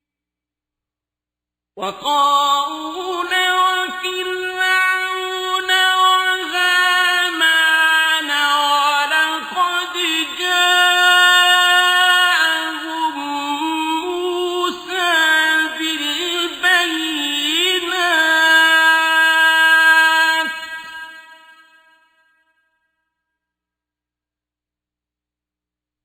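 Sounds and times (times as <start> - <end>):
man chanting melodic recitation: 1.8 - 21.2.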